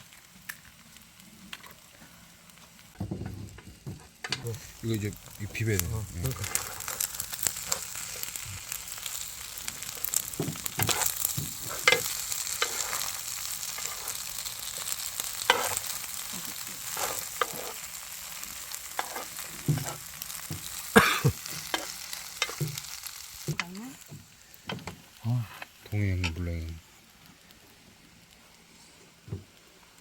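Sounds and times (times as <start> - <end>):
rice sizzling in a pan: 0.0 - 30.0
utensil scraping a pan: 10.6 - 15.9, 16.8 - 17.8, 18.9 - 20.7.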